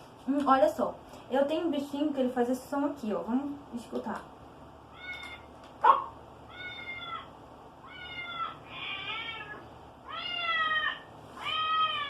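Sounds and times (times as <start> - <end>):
cat meowing: 4.9 - 5.5, 6.5 - 12.0.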